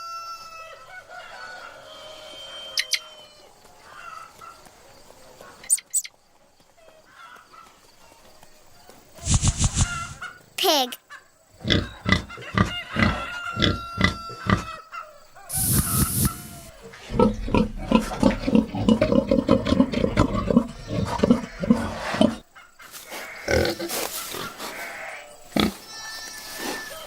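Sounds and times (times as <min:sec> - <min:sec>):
pig grunting: 0:11.6 - 0:14.8, 0:15.5 - 0:22.5, 0:23.4 - 0:25.8.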